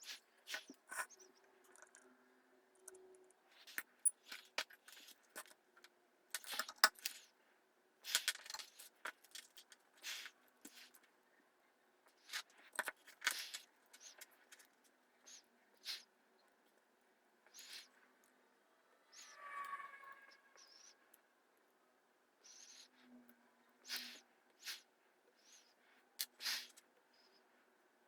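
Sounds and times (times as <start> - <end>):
small parts and tools rattling: 0.0 - 2.1, 2.8 - 7.3, 8.0 - 11.1, 12.1 - 16.0.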